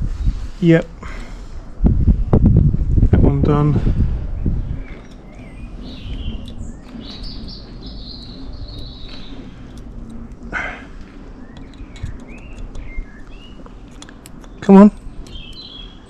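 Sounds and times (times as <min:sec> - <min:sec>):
bird singing: 0:04.3 - 0:16.0
faint clicks of small parts: 0:09.7 - 0:15.7.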